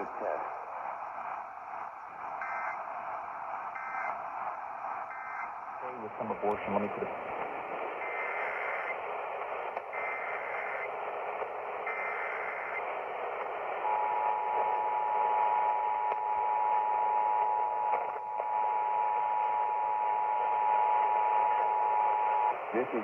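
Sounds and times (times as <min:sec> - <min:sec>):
warbling data bursts: 0:00.0 - 0:15.6
radio hiss: 0:00.0 - 0:23.0.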